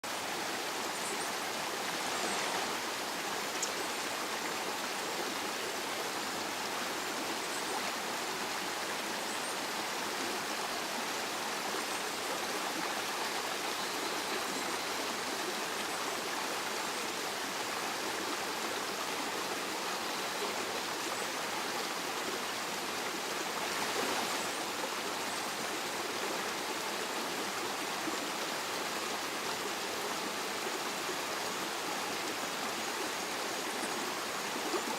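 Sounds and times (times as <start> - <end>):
stream water flowing: 0.0 - 34.9.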